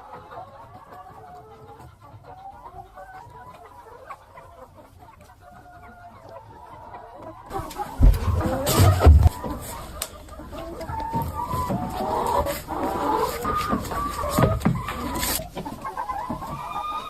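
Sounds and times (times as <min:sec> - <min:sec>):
chickens clucking: 0:00.0 - 0:17.0.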